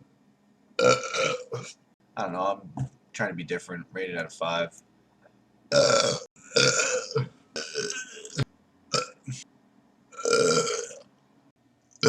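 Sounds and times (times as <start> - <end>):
man belching: 0.8 - 1.8, 5.7 - 9.4, 10.2 - 11.0.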